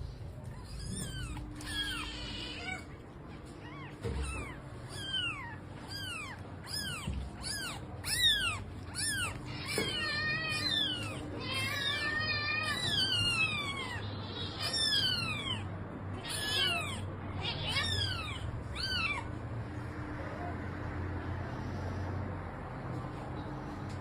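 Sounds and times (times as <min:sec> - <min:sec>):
cat meowing: 0:00.4 - 0:19.4.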